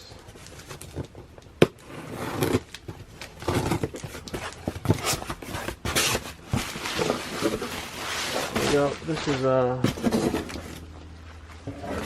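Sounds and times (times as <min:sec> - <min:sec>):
box and packaging rustling: 0:00.0 - 0:12.0.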